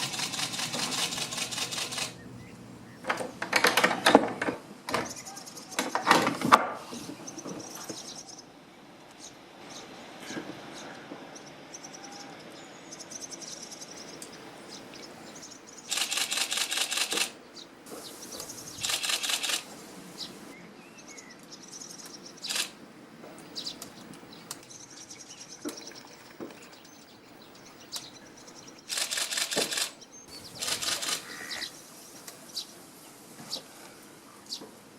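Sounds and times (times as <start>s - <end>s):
camera shutter bursts: 0.0s - 2.2s, 15.9s - 17.4s, 18.4s - 19.8s, 22.4s - 22.8s, 28.9s - 31.7s
swallows chirping: 6.8s - 8.5s, 9.2s - 22.8s, 23.4s - 32.8s.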